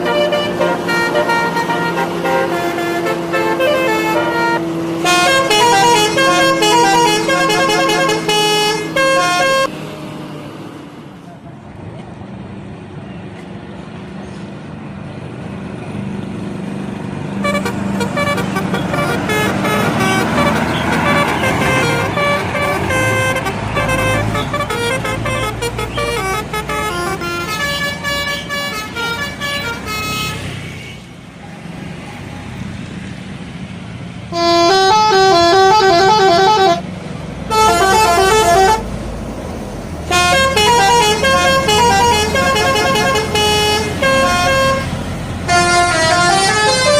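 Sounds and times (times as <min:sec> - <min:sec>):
multi-tone bus horns: 0:00.0 - 0:09.8, 0:17.3 - 0:31.2, 0:34.3 - 0:39.2, 0:40.0 - 0:46.9
bus engine running: 0:00.0 - 0:46.9.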